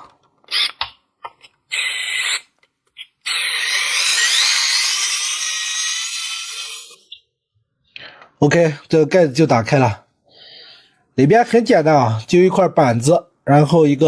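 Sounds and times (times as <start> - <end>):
electric screwdriver motor whining: 3.2 - 7.1.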